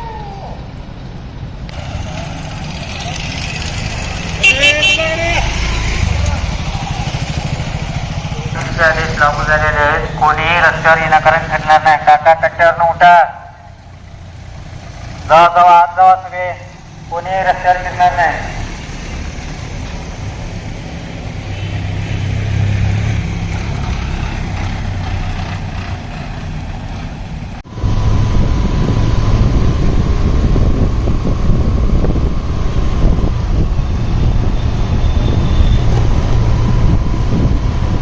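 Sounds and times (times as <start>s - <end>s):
vehicle engine and road noise: 0.0s - 38.0s.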